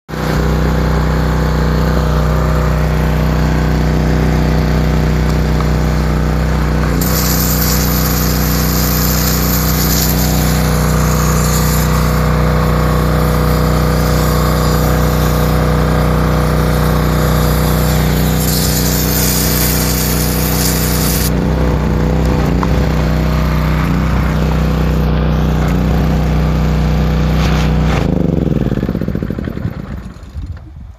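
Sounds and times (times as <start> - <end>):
pressure washer engine running: 0.1 - 30.8
loud spray hiss: 6.8 - 21.4.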